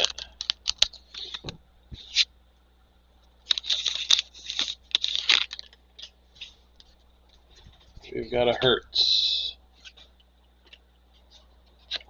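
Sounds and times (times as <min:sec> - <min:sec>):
plastic wrapper crinkling and tearing: 0:00.0 - 0:01.4, 0:03.4 - 0:06.5.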